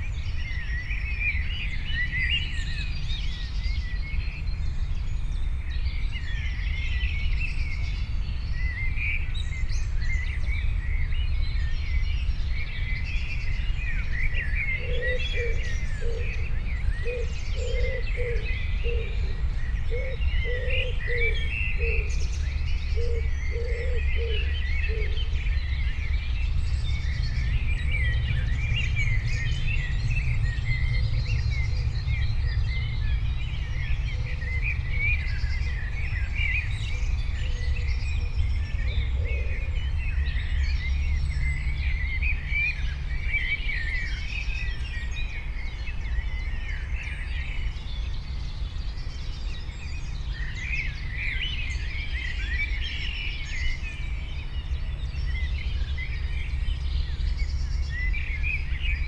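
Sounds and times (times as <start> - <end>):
low background rumble: 0.0 - 59.0
small birds chirping and trilling: 0.0 - 59.0.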